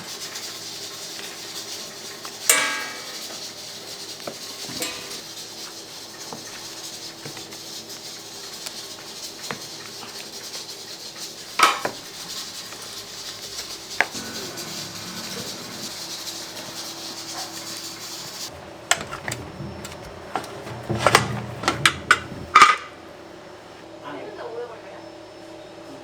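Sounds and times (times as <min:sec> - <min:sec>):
metal pans clanking: 0:02.4 - 0:03.4, 0:04.3 - 0:05.3, 0:11.5 - 0:23.0.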